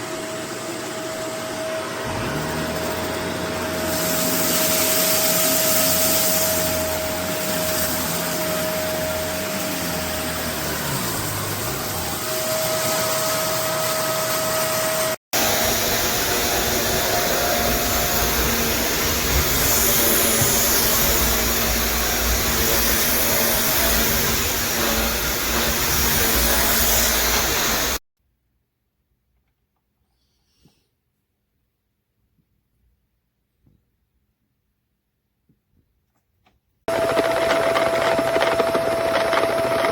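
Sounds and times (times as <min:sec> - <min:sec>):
vacuum cleaner running: 0:00.0 - 0:28.0, 0:36.9 - 0:39.9.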